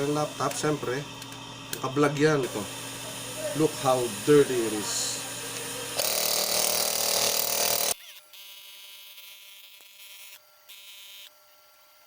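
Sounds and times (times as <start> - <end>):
handheld electric motor tool: 0.0 - 12.0.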